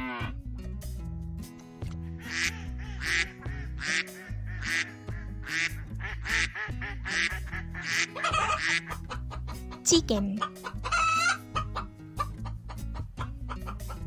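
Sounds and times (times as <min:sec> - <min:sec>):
background music: 0:00.0 - 0:14.0
duck quacking: 0:02.2 - 0:14.0.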